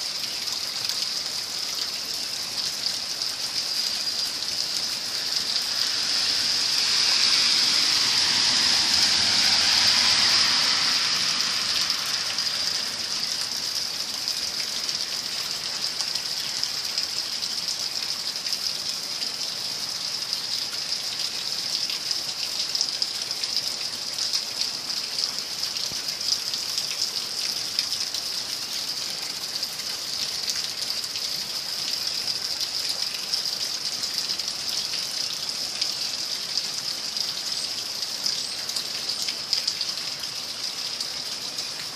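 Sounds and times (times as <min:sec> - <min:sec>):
floodwater and rain rushing: 0:00.0 - 0:41.9
whooshing swell: 0:04.7 - 0:13.7.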